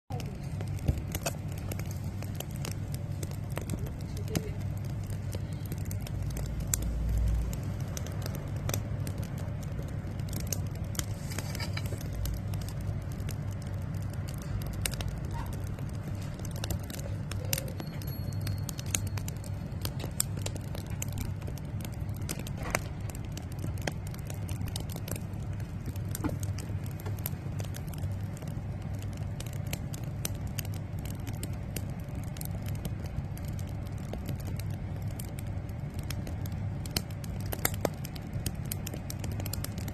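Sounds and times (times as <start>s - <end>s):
firewood crackling and popping: 0.1s - 39.9s
low rumble: 0.1s - 39.9s.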